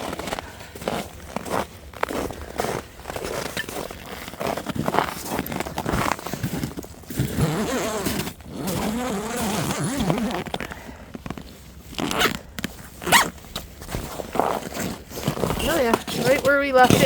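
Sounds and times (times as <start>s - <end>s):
tent zipper pulled open: 3.4s - 17.0s.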